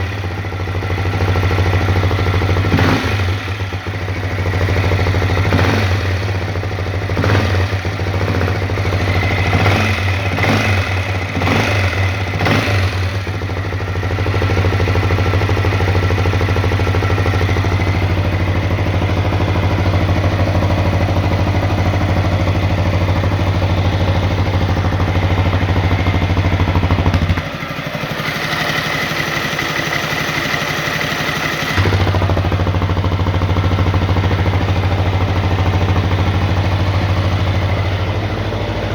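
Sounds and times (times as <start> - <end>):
motorcycle engine idling: 0.0 - 38.9.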